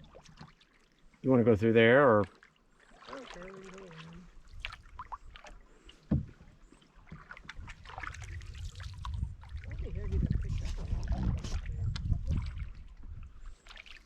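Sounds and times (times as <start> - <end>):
paddles splashing in water: 0.0 - 14.0
low rumble: 7.9 - 13.0.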